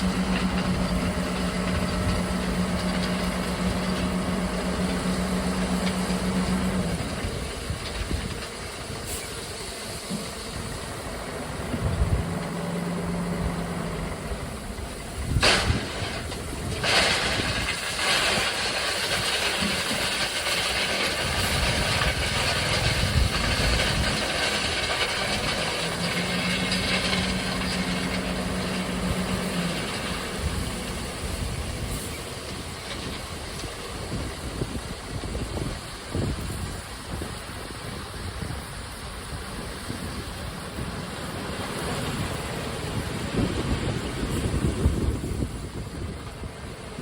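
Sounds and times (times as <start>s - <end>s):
diesel engine running: 0.0s - 47.0s.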